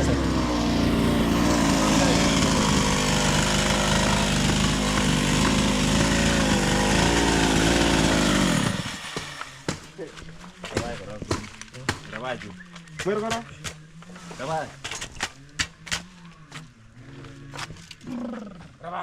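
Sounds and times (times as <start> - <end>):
chainsaw running at high speed: 0.0 - 9.7.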